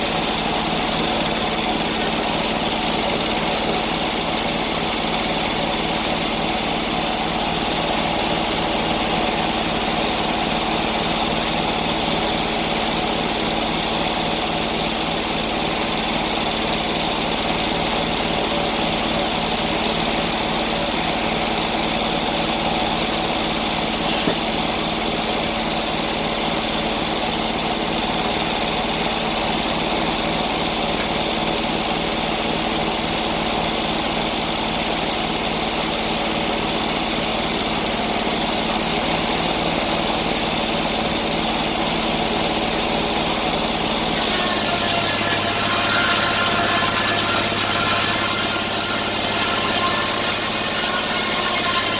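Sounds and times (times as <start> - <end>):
sawmill engine running: 0.0 - 51.9.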